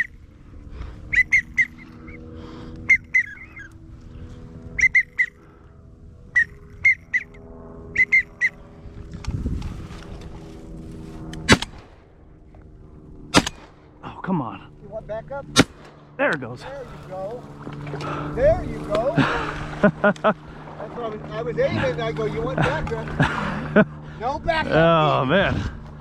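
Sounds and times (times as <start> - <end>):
duck whistle toots: 1.1 - 2.2, 2.9 - 3.7, 4.8 - 5.4, 6.3 - 7.4, 8.0 - 8.6
shotgun shot: 11.5 - 12.0, 13.3 - 13.9, 15.6 - 16.0.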